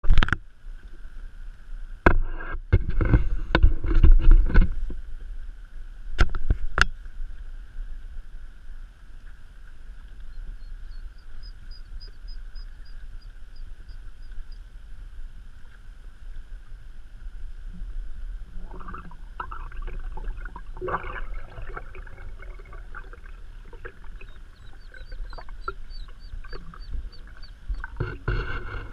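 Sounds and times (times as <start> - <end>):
watery hiss: 18.5 - 28.9
high chirps: 23.6 - 28.0
kayak knocking and bumping: 23.8 - 28.9.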